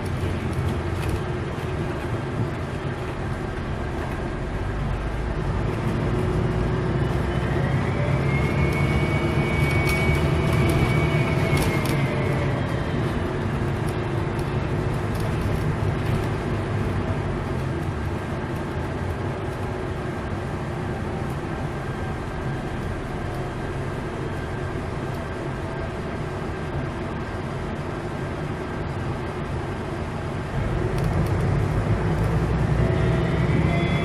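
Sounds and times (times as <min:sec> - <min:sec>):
bus diesel engine accelerating: 0:00.0 - 0:34.0
turbocharger high whistle: 0:07.1 - 0:12.6, 0:32.9 - 0:34.0.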